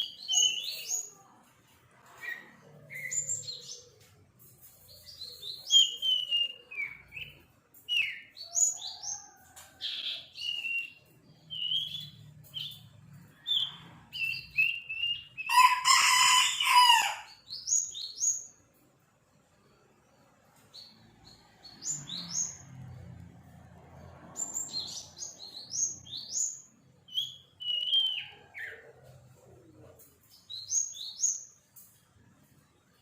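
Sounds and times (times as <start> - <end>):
songbird chirps and whistles: 5.2 - 8.3, 27.2 - 28.8.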